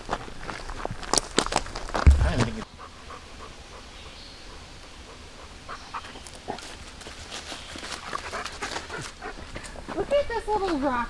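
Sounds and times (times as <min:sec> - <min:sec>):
small dog panting: 0:02.6 - 0:09.9.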